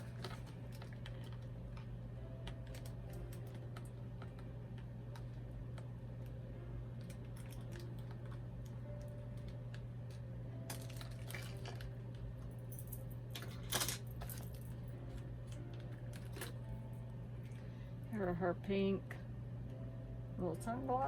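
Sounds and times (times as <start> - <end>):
toy packaging crinkling: 0.0 - 4.5, 7.0 - 8.4, 10.6 - 12.0
steady low hum: 0.0 - 21.0.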